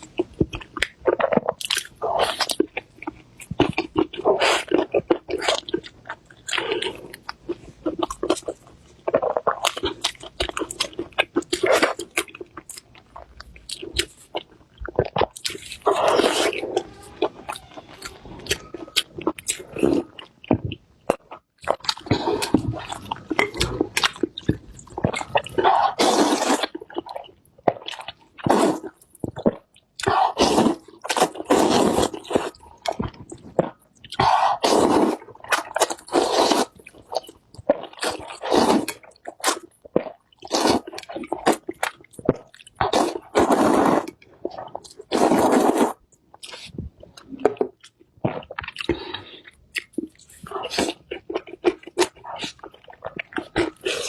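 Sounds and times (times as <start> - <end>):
biting chewing and crunching: 0.0 - 54.0.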